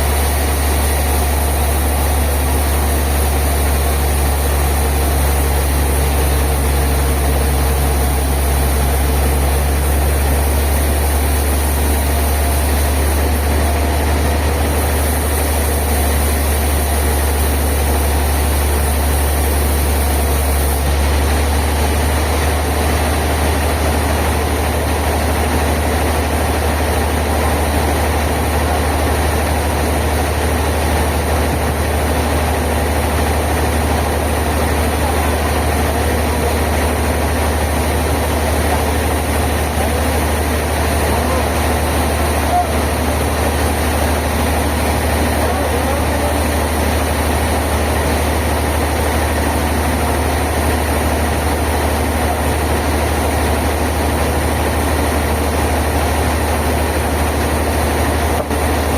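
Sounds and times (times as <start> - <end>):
sawmill machinery droning: 0.0 - 58.9.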